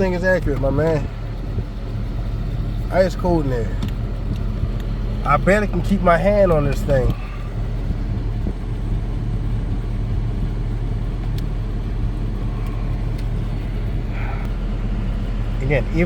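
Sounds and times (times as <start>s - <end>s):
air conditioning blower rushing: 0.0s - 16.0s
car engine idling: 0.0s - 16.0s.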